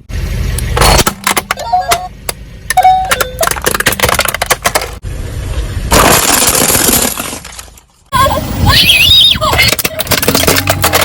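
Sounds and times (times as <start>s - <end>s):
objects crunching under tyre: 5.9s - 8.1s, 9.5s - 11.0s.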